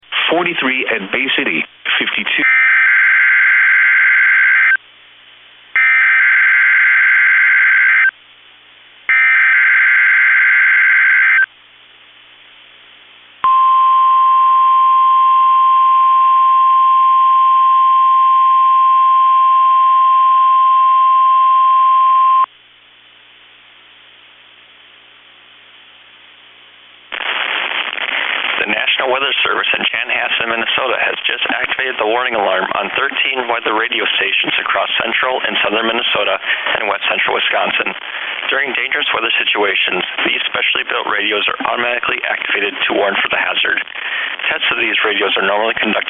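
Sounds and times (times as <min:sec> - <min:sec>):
faint radio hiss: 0:00.0 - 0:02.6, 0:04.6 - 0:05.8, 0:08.0 - 0:09.2, 0:11.2 - 0:13.5, 0:22.5 - 0:46.0
voice announcement: 0:00.1 - 0:02.8, 0:28.6 - 0:46.0
single-pitch warning alarm tone: 0:05.8 - 0:08.1, 0:09.1 - 0:11.5, 0:13.4 - 0:22.5.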